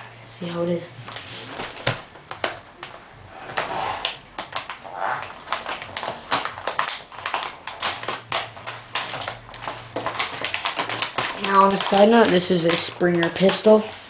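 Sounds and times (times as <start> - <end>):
package being opened by hand: 3.6 - 13.8.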